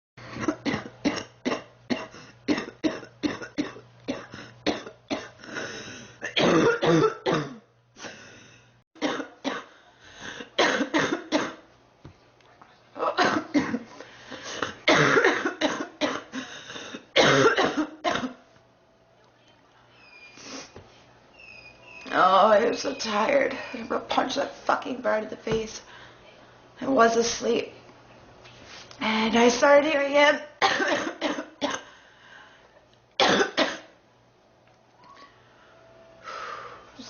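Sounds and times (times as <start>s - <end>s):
girl coughing: 0.4s - 5.4s, 6.2s - 7.6s, 9.0s - 9.7s, 10.6s - 11.6s, 13.0s - 13.9s, 14.6s - 18.4s, 30.6s - 31.9s, 33.2s - 34.0s.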